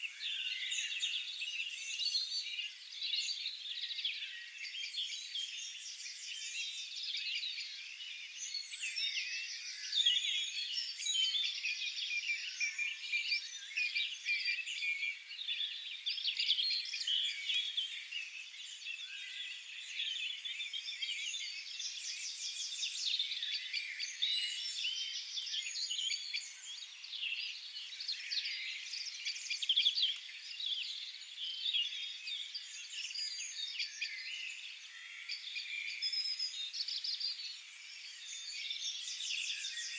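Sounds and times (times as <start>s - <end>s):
chorus of songbirds singing: 0.0s - 39.9s.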